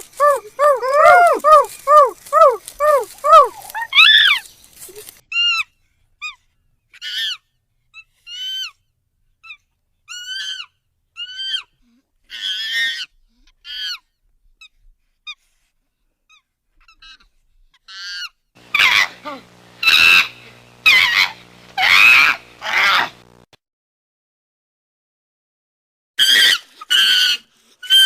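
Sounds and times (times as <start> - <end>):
chimpanzee high-pitched calls: 0.0 - 5.6, 9.4 - 11.7, 17.9 - 23.3, 26.2 - 28.0.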